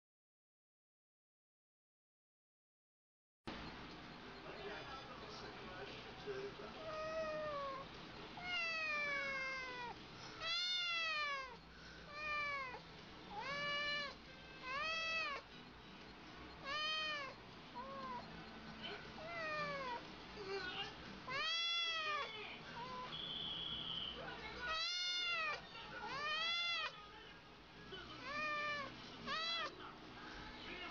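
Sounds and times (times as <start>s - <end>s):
cat meowing: 6.8s - 15.5s, 16.6s - 18.4s, 19.2s - 20.0s, 21.3s - 23.2s, 24.6s - 27.0s, 28.2s - 29.8s.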